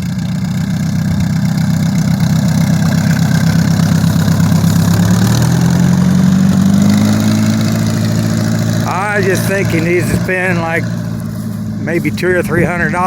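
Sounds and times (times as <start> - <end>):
light aircraft piston engine running: 0.0 - 13.0.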